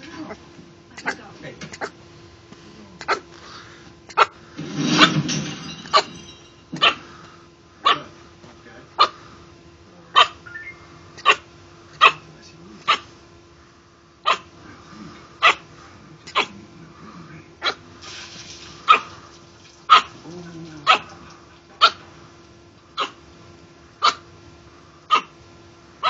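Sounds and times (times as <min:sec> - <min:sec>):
dog barking: 0:01.0 - 0:02.0, 0:03.0 - 0:03.3, 0:04.1 - 0:04.4, 0:06.8 - 0:07.1, 0:07.8 - 0:08.1, 0:09.0 - 0:09.2, 0:10.1 - 0:10.4, 0:11.2 - 0:13.1, 0:14.2 - 0:14.5, 0:15.4 - 0:15.7, 0:16.3 - 0:16.6, 0:17.6 - 0:17.8, 0:18.9 - 0:19.2, 0:19.9 - 0:20.2, 0:20.8 - 0:21.2, 0:21.8 - 0:22.1, 0:23.0 - 0:23.2, 0:24.0 - 0:24.2, 0:25.1 - 0:25.3.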